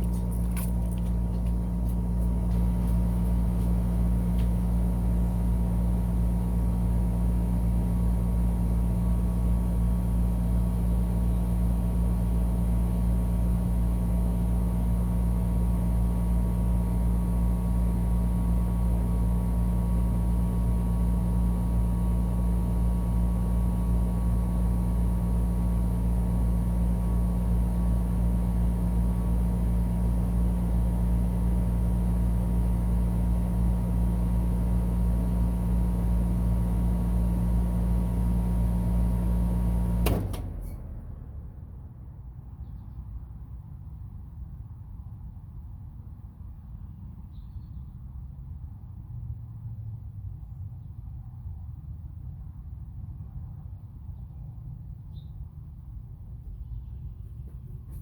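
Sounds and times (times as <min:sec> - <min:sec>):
condenser fan: 0:00.0 - 0:42.3
air conditioner compressor hum: 0:00.0 - 0:42.6.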